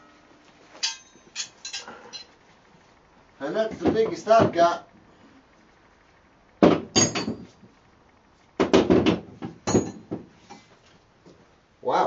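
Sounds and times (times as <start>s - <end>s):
metal tools clinking: 0.8s - 2.3s.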